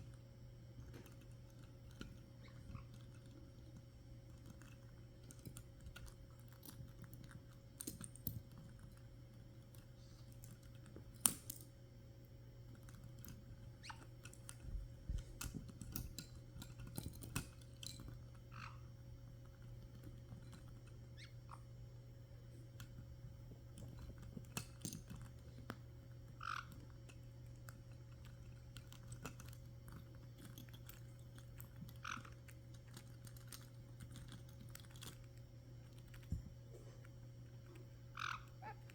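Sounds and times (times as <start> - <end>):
parrots chewing with beaks: 0.0 - 11.5, 22.6 - 38.9
steady low hum: 0.0 - 38.9
parrot squeaks: 13.8 - 14.1, 21.2 - 21.6, 38.2 - 38.9.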